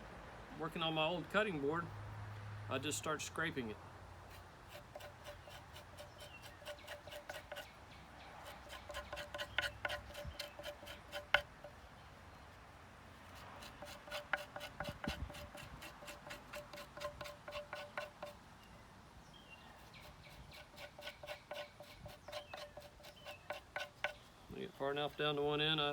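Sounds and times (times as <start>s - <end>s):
twine rasping on cutting board: 4.3s - 7.7s, 8.4s - 11.5s, 13.4s - 18.4s, 20.0s - 24.2s.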